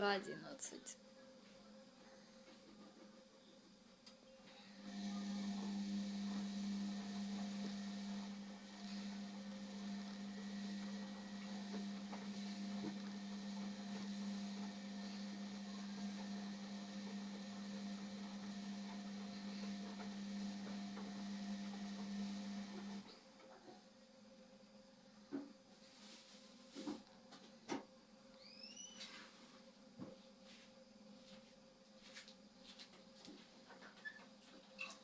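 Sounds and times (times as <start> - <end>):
washing machine humming: 4.5 - 23.8.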